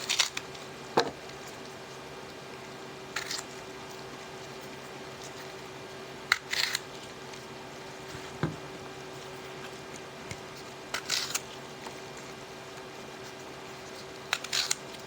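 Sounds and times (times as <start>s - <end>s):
steady background hum: 0.0s - 15.0s
knife cutting apples: 6.3s - 6.9s, 7.9s - 12.0s, 14.3s - 14.9s
dull knock on cutting board: 8.1s - 8.7s.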